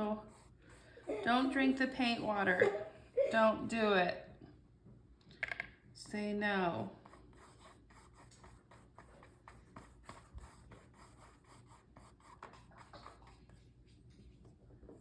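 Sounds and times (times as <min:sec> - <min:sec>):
low room hum: 0:00.0 - 0:15.0.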